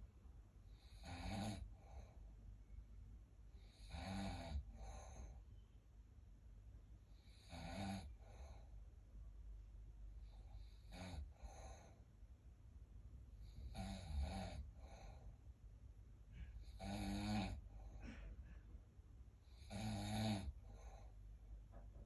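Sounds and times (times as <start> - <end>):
person snoring: 0.8 - 2.0, 3.6 - 5.4, 7.2 - 8.6, 13.4 - 15.2, 16.6 - 17.7, 19.4 - 21.1
faint breath: 4.6 - 5.8, 8.1 - 9.0, 10.1 - 12.2, 14.6 - 15.6, 16.2 - 16.8, 17.5 - 18.9, 20.5 - 21.5.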